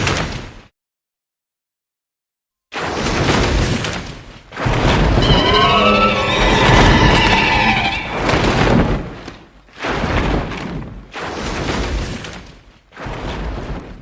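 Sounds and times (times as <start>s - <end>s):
monster roar: 5.2s - 8.7s
heavy rumbling noise: 5.2s - 9.2s.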